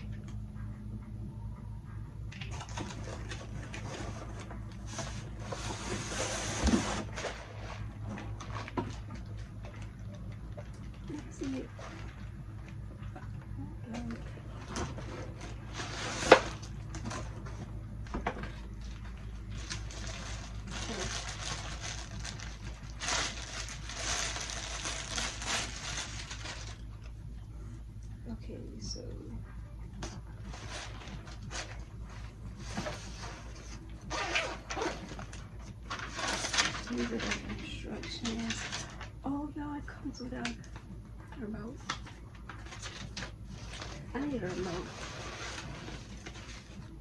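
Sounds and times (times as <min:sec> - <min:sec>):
low steady hum: 0:00.0 - 0:47.0
packaging rustling and crinkling: 0:02.4 - 0:12.9, 0:13.9 - 0:27.2, 0:30.4 - 0:39.2, 0:41.8 - 0:47.0
packaging crinkling: 0:18.5 - 0:27.2, 0:30.4 - 0:39.2.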